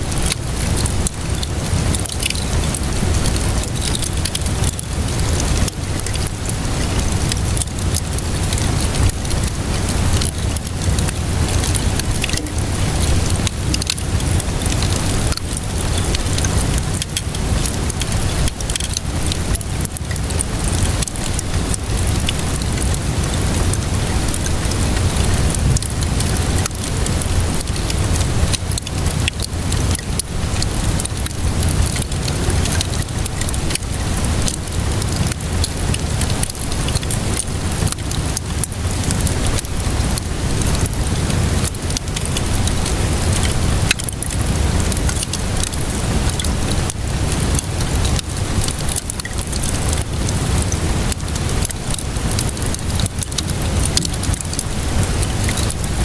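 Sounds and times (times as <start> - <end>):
rain hissing: 0.0 - 56.0
wood fire crackling and popping: 0.0 - 56.0
deep rumble: 8.0 - 16.8.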